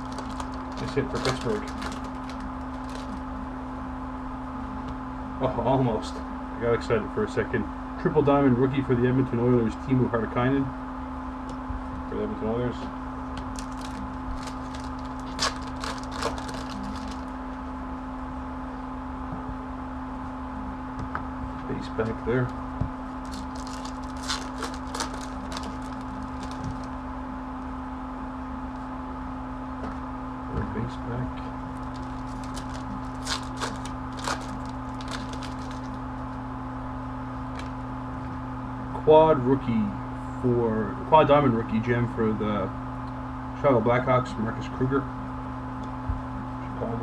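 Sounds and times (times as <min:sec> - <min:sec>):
trading cards rustling: 0:00.0 - 0:03.3, 0:13.4 - 0:17.4, 0:23.2 - 0:27.0, 0:31.7 - 0:36.0, 0:37.5 - 0:37.8
steady electrical hum: 0:00.0 - 0:47.0.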